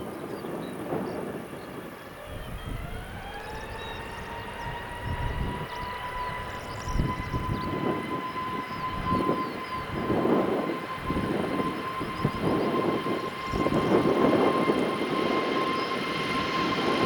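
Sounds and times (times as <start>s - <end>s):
jet engines spooling up: 0.0s - 17.0s.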